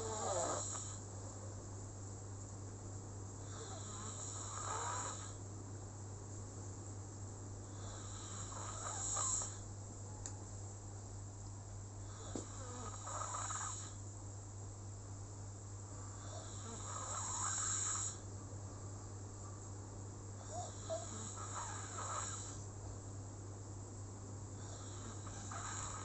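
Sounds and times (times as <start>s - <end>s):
slow raspy snoring: 0.0s - 1.0s, 3.4s - 5.4s, 7.7s - 9.6s, 12.0s - 14.0s, 16.2s - 18.2s, 20.4s - 22.6s, 24.6s - 26.0s.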